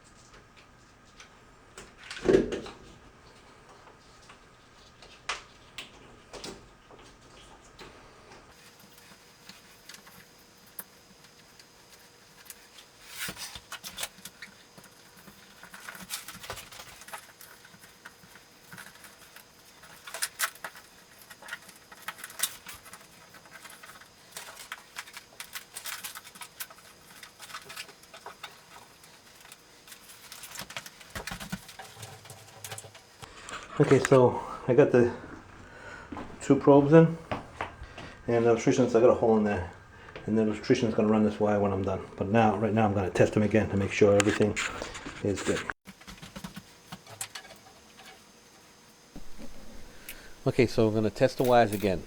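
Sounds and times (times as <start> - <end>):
faint steady hum: 0.0 - 52.0
light clicks taps and scrapes: 3.3 - 34.2, 43.7 - 52.0.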